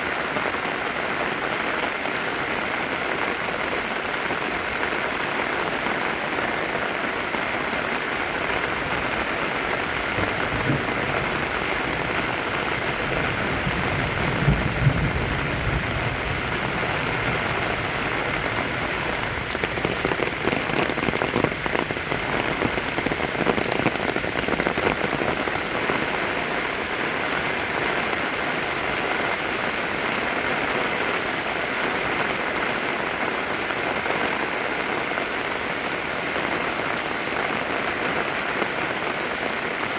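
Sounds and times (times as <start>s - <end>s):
steady rain hiss: 0.0s - 39.9s
raindrops tapping: 5.2s - 38.8s.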